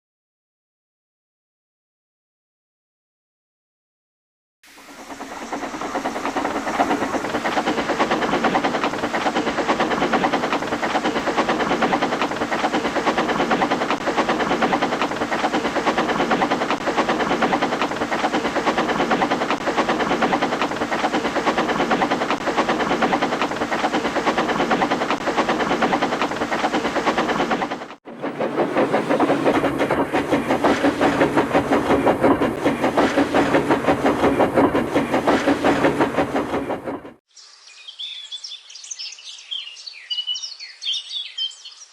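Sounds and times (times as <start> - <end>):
steam locomotive chuffing: 4.7 - 37.2.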